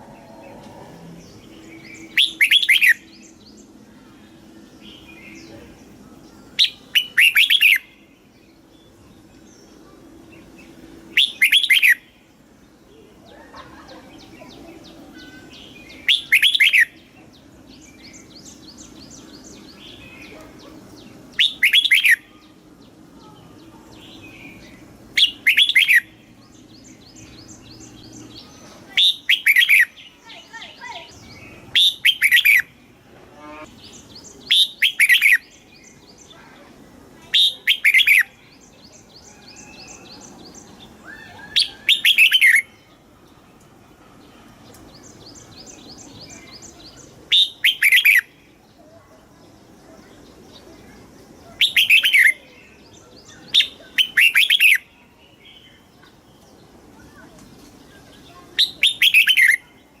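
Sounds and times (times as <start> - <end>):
faint rapid bird chattering: 0.0 - 12.1, 12.7 - 32.8, 33.6 - 43.1, 44.3 - 60.0
bird singing whistled phrases: 1.8 - 3.2, 6.6 - 7.9, 11.2 - 12.1, 15.2 - 17.0, 21.4 - 22.3, 25.2 - 26.1, 29.0 - 30.5, 31.2 - 32.7, 34.3 - 35.6, 37.4 - 38.3, 41.0 - 42.7, 45.6 - 48.3, 51.6 - 52.5, 53.5 - 55.7, 58.6 - 59.7.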